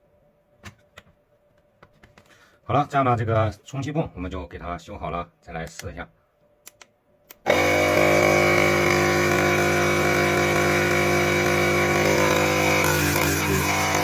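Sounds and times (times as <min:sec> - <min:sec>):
switch click: 0:06.6 - 0:07.4
electric compressor running: 0:07.4 - 0:14.0.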